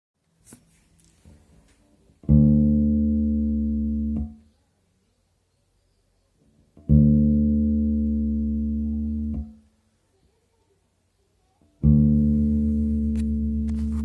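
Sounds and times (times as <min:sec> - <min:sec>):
bass guitar note with buzzing: 0:02.2 - 0:04.4, 0:06.8 - 0:09.6, 0:11.8 - 0:14.0.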